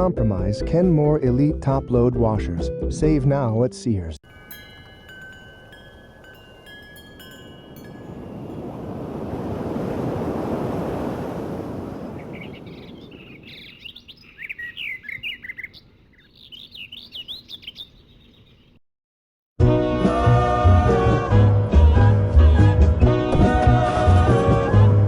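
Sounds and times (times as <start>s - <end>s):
small birds chirping: 11.8s - 18.8s.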